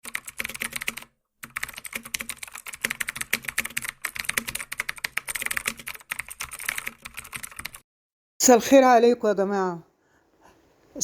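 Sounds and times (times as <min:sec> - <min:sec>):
fast irregular clicking: 0:00.0 - 0:07.8.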